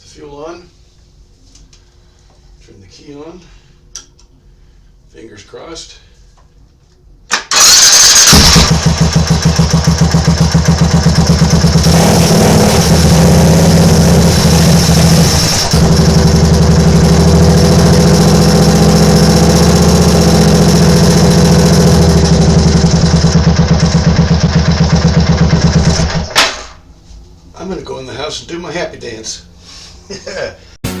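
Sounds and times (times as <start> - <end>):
starter cranking: 7.3 - 22.5
motorcycle engine idling: 8.3 - 26.2.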